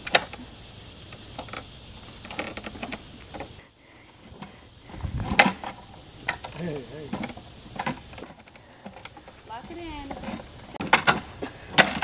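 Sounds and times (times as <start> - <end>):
clicks and knocks of climbing frame: 1.2 - 3.6, 5.2 - 12.0.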